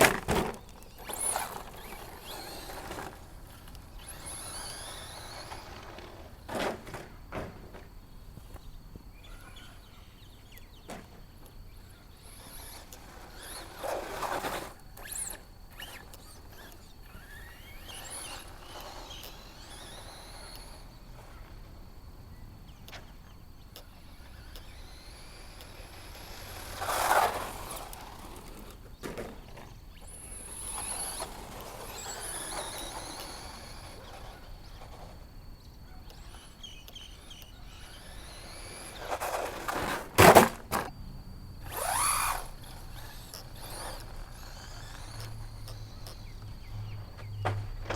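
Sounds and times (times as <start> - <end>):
toy truck crashing knocks: 0.0 - 0.6, 5.8 - 7.9, 38.4 - 40.9
electric motor whining: 0.0 - 47.9.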